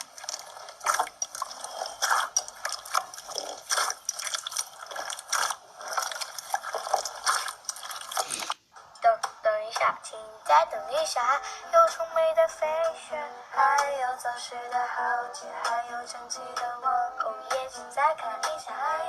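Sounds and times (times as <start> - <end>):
slime squishing and popping: 0.0 - 8.6.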